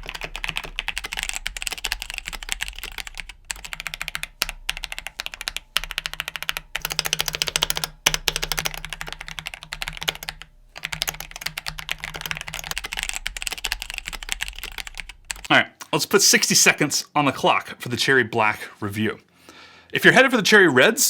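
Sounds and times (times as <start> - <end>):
fast typing on mechanical keyboard: 0.0 - 15.6.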